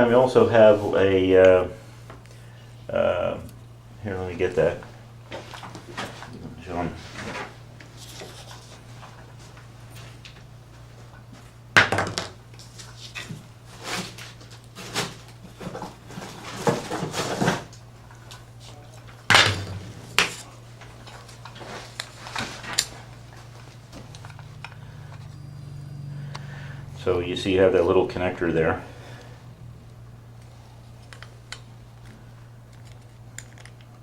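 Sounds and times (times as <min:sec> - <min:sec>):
steady low hum: 0:00.0 - 0:34.0
small parts and tools clattering: 0:30.9 - 0:34.0.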